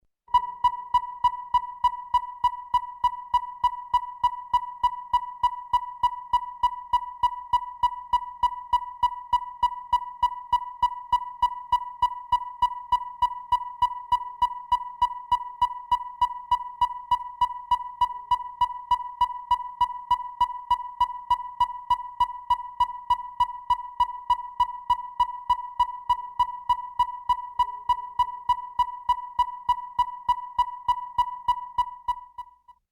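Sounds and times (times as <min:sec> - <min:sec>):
high-pitched electronic beeping: 0:00.3 - 0:32.8.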